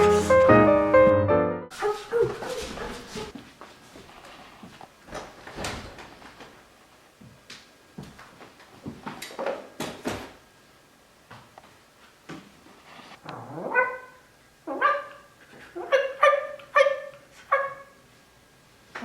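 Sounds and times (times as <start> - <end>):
dog yelping: 1.8 - 3.3, 13.5 - 18.0
high sharp barks: 13.7 - 18.0.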